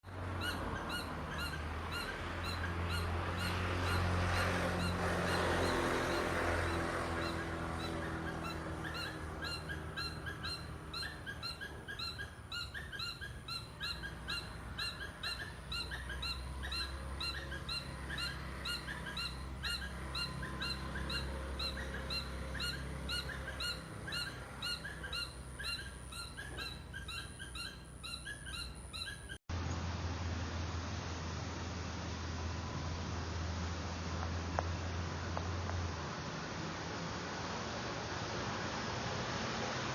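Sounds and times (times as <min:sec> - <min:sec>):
birds chirping: 0:00.0 - 0:29.4
broad rushing noise: 0:29.5 - 0:39.9.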